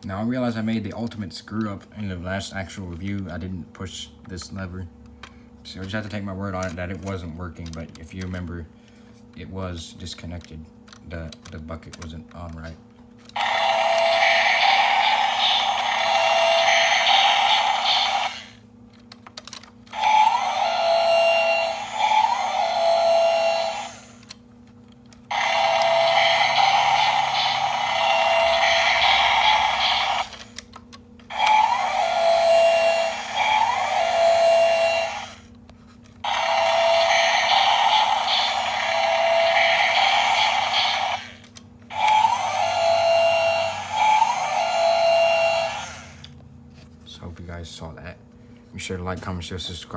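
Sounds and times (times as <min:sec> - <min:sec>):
toy gear motor whirring: 0:05.8 - 0:08.4, 0:13.3 - 0:18.6, 0:19.3 - 0:24.4, 0:25.2 - 0:35.5, 0:36.2 - 0:46.3
electronic engine sound effect: 0:25.3 - 0:30.4.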